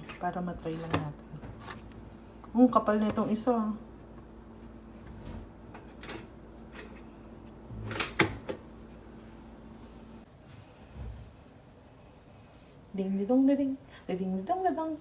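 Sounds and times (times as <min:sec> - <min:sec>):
low steady hum: 0:00.0 - 0:15.0
kitchen clicks and knocks: 0:07.8 - 0:08.7.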